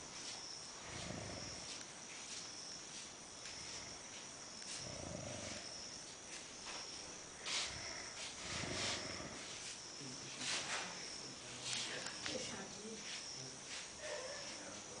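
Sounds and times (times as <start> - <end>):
crickets chirring: 0.0 - 15.0
deep snoring: 0.8 - 1.7, 4.7 - 5.9, 7.6 - 9.6.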